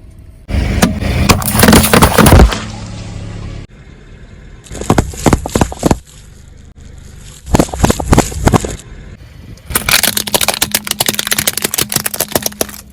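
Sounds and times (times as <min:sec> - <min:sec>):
objects crunching under car tyre: 0:00.8 - 0:02.8, 0:04.7 - 0:08.9, 0:09.7 - 0:12.9.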